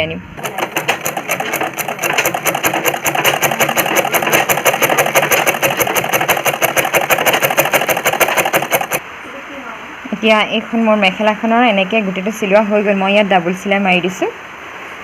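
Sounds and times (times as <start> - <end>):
sewing machine stitching: 0.4 - 9.0.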